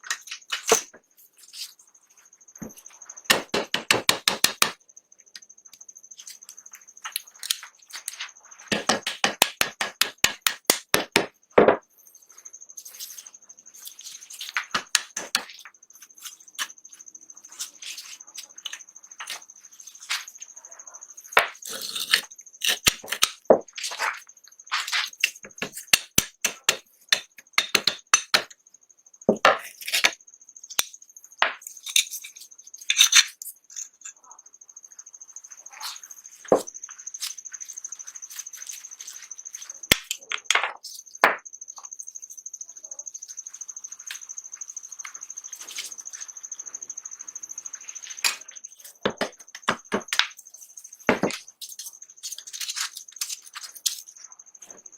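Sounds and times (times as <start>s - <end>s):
metal tools tapping and scraping: 0.0s - 1.7s, 29.3s - 34.2s, 48.0s - 54.2s
faint high whine: 29.9s - 54.9s.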